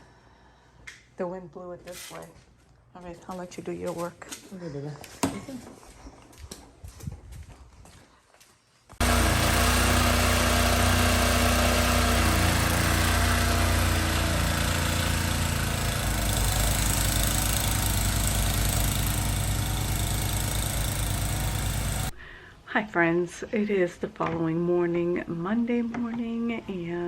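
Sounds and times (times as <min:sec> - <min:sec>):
snowblower engine running: 0:09.0 - 0:22.2.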